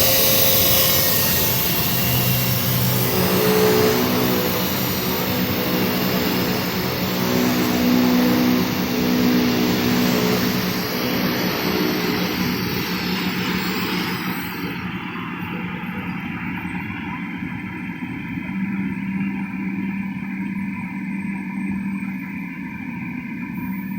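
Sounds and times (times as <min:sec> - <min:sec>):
high whirring hiss: 0:00.0 - 0:15.6
cnc machine motor hum: 0:00.0 - 0:16.2.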